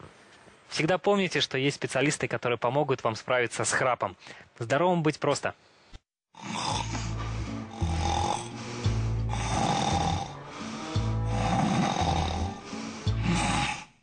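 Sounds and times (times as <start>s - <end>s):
loud snoring: 6.4s - 14.0s
music playing: 6.6s - 13.7s.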